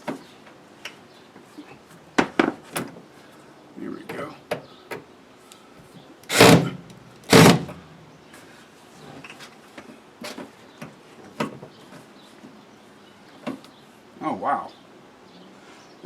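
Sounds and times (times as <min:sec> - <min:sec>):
loud metal scraping slides: 0:06.3 - 0:07.8.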